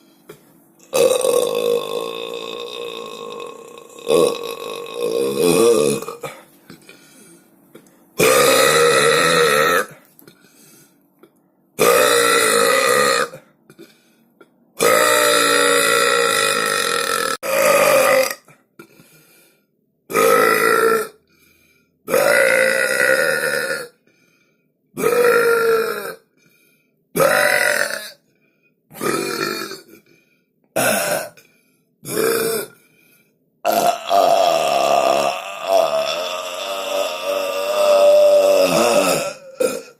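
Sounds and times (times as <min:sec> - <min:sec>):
person burping loudly: 0:00.8 - 0:07.0, 0:08.2 - 0:10.4, 0:11.8 - 0:13.9, 0:14.8 - 0:19.0, 0:20.1 - 0:21.2, 0:22.1 - 0:24.0, 0:25.0 - 0:26.3, 0:27.2 - 0:28.2, 0:28.9 - 0:30.2, 0:30.8 - 0:31.4, 0:32.0 - 0:32.8, 0:33.6 - 0:39.9.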